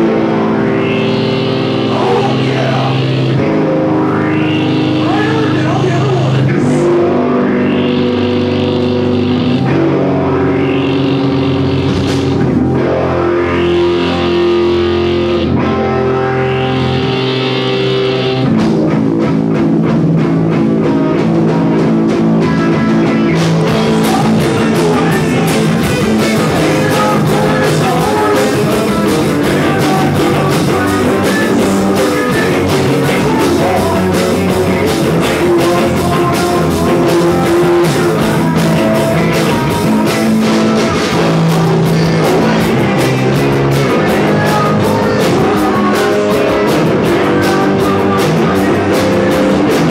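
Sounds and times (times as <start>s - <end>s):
electric guitar chords: 0.0s - 49.9s
drum beat: 22.8s - 49.9s.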